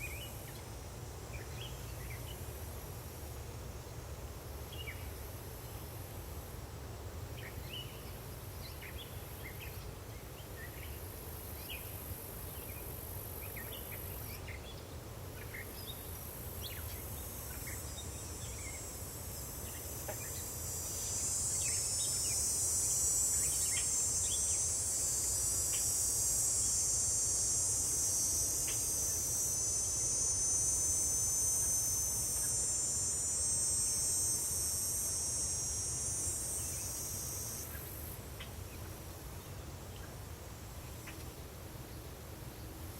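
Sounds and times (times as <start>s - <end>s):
insects trilling: 0.0s - 38.8s
loud insect buzz: 16.6s - 38.2s.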